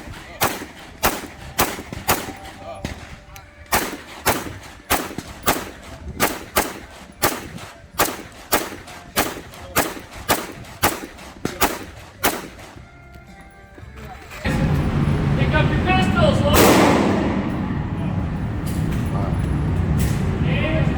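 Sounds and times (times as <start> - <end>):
pistol shots: 0.0 - 12.9, 16.6 - 17.8.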